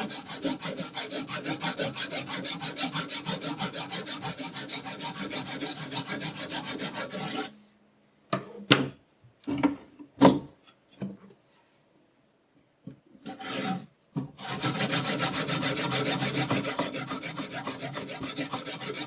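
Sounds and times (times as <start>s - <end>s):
sharpening stone scraping knife: 0.0s - 7.5s, 13.3s - 13.8s, 14.4s - 19.0s.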